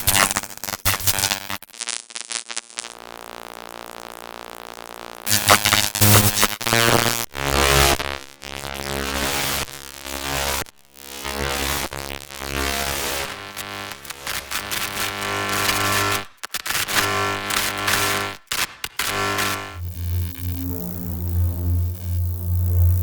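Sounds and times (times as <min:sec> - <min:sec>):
crackling electric arcs and zaps: 0:00.0 - 0:23.0
electric hum drone: 0:19.0 - 0:23.0.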